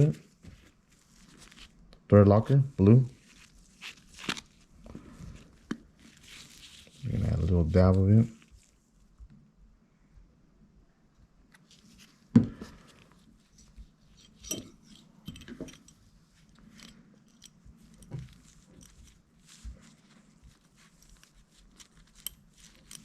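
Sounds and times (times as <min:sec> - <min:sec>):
metal wrench parts clicking: 0:14.1 - 0:19.2, 0:21.1 - 0:23.0.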